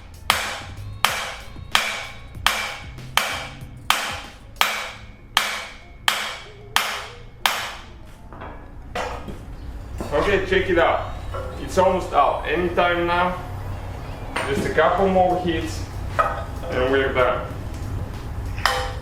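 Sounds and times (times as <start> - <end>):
hammer blows on metal: 0.0 - 7.9.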